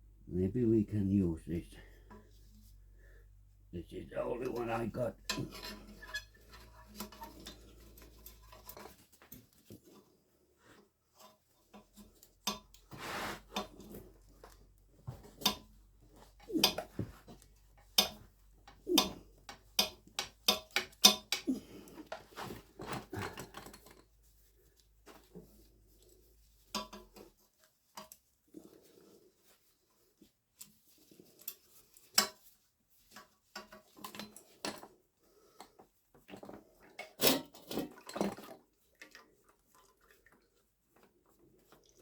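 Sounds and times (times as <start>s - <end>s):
metal tool clinking and scraping: 4.3s - 9.5s.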